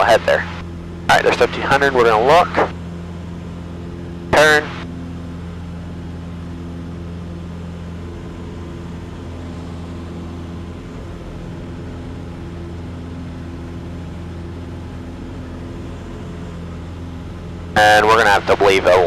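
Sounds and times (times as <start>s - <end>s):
light aircraft engine droning: 0.0s - 19.0s.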